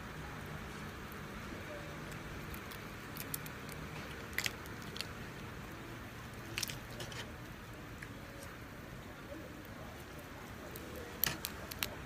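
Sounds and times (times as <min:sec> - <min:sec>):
low background hum: 0:00.0 - 0:12.0
crunchy clicks: 0:02.0 - 0:05.6, 0:06.3 - 0:08.6, 0:09.6 - 0:12.0.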